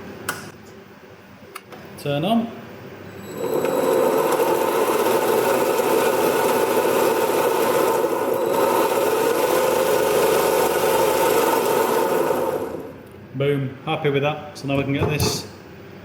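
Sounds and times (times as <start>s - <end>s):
lathe motor running with rattle: 3.2s - 13.0s.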